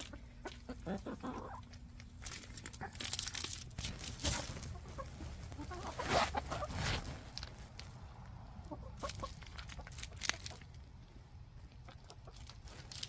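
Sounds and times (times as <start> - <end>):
hens clucking: 0.0 - 3.1, 3.9 - 12.9
rustling and scratching: 0.0 - 8.1, 9.0 - 10.9, 11.6 - 13.0.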